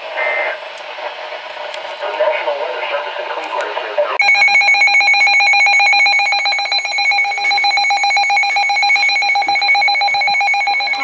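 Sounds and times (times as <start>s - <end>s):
electronic alarm tone: 4.2s - 11.0s.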